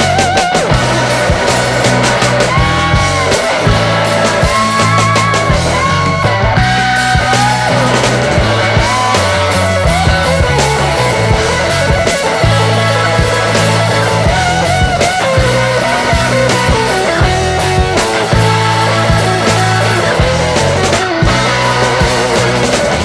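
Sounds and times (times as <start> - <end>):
bass line: 0.0 - 23.0
electric guitar: 0.0 - 23.0
steady drum beat: 0.0 - 23.0.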